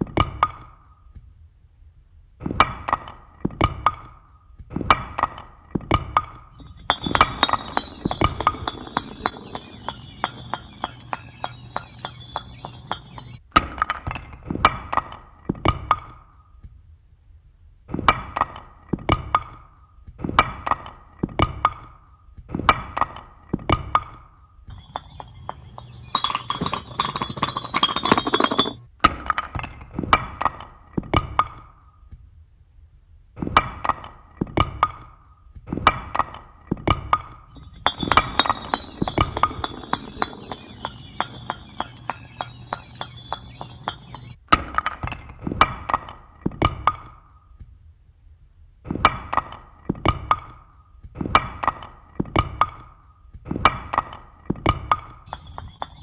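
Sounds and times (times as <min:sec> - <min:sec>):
chimes ringing: 0:06.6 - 0:13.4, 0:24.8 - 0:28.9, 0:37.6 - 0:44.4.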